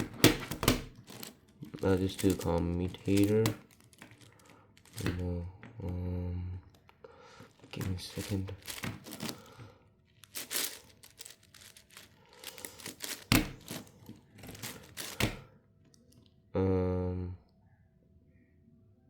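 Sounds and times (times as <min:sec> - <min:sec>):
plastic cube clicking: 0:00.0 - 0:04.3.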